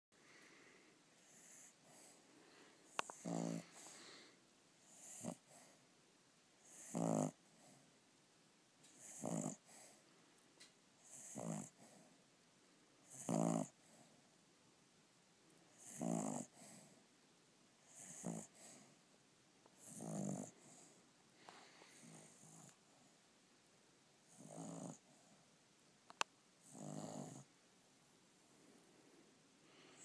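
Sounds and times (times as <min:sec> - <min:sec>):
rhythmic snoring: 0:01.2 - 0:02.2, 0:02.9 - 0:05.8, 0:06.6 - 0:07.9, 0:08.9 - 0:10.0, 0:11.0 - 0:12.2, 0:13.0 - 0:14.2, 0:15.7 - 0:17.0, 0:17.8 - 0:19.0, 0:19.8 - 0:21.0, 0:21.6 - 0:23.1, 0:24.3 - 0:25.4, 0:26.6 - 0:27.5.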